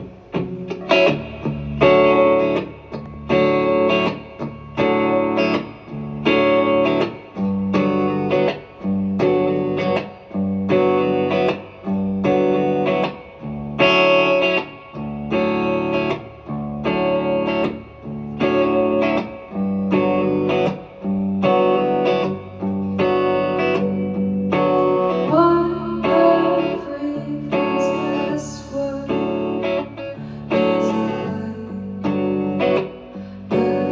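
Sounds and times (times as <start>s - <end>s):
guitar chords strummed: 0.0s - 33.9s.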